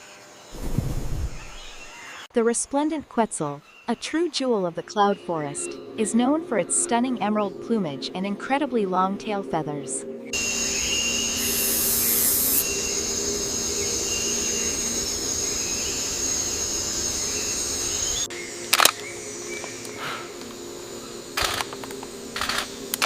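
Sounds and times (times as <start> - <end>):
outdoor nature hiss: 0.0 - 8.0, 10.3 - 23.0
sharp clicks: 21.4 - 23.0.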